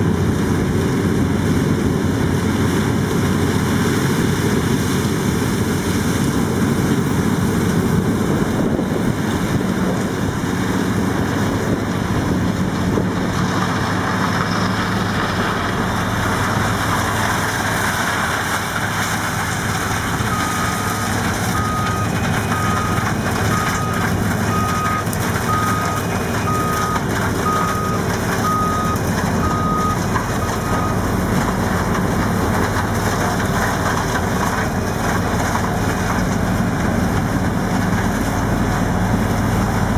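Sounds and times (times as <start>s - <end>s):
diesel engines running: 0.0s - 39.9s
reversing alarm beeping: 19.7s - 31.1s.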